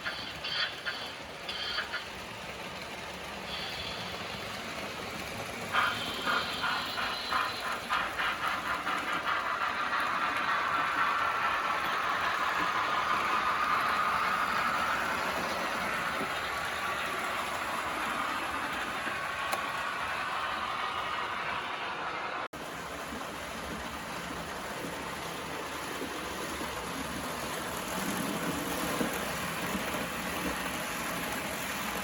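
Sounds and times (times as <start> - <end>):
model train wheels clicking: 0.0 - 22.4
model train running hum: 0.0 - 32.0.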